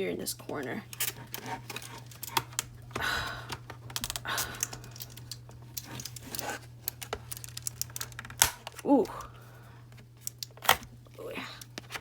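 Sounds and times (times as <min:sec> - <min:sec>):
plastic clicks and scraping: 0:03.5 - 0:08.8, 0:11.5 - 0:12.0.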